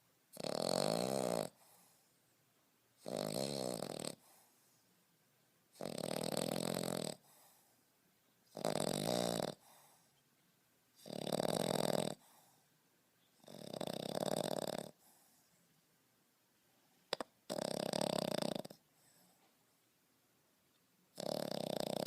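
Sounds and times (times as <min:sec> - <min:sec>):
puppy snoring: 0:00.3 - 0:02.1, 0:03.0 - 0:04.7, 0:05.7 - 0:07.7, 0:08.5 - 0:10.1, 0:11.0 - 0:12.6, 0:13.4 - 0:15.4, 0:17.1 - 0:19.3, 0:21.1 - 0:22.0.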